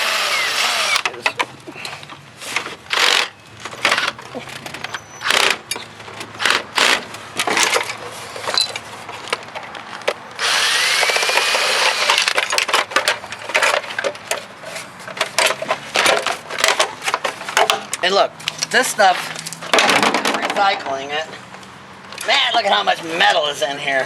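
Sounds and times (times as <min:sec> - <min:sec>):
metal and plastic parts clicking: 0:02.9 - 0:08.8.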